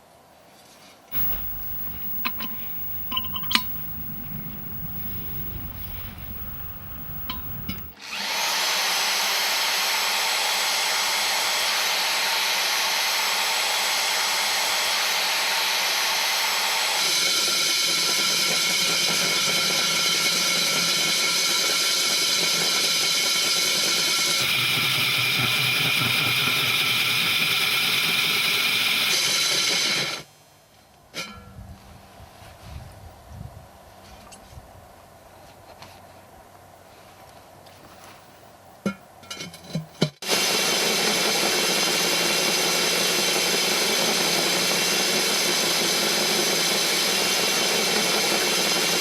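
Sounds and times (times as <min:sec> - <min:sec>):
core drill motor whining: 0:01.2 - 0:17.2
drill cutting hiss: 0:01.2 - 0:18.1, 0:24.4 - 0:30.2.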